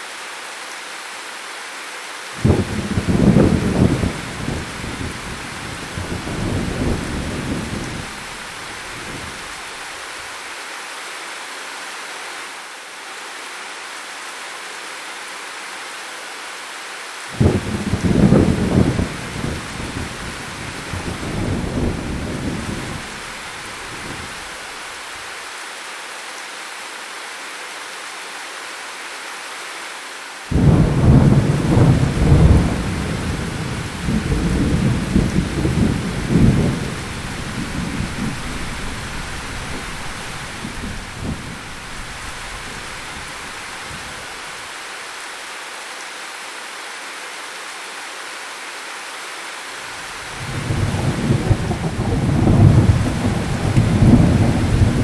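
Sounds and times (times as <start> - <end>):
steady rain: 0.0 - 55.0
rolling thunder: 2.4 - 9.6, 17.4 - 24.5, 30.5 - 44.4, 50.2 - 55.0.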